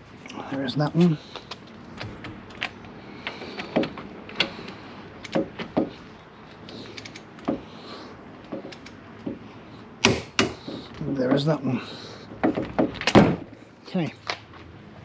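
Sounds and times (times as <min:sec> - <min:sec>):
metallic clicks of hand tools: 0:06.7 - 0:07.6, 0:08.4 - 0:09.4.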